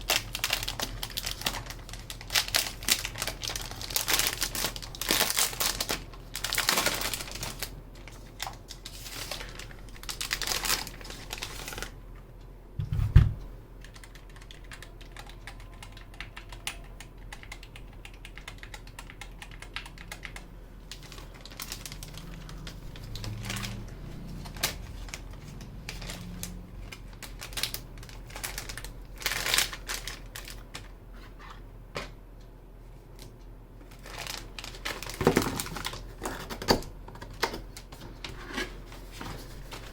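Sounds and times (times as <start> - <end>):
mechanical keyboard typing: 13.8 - 20.5.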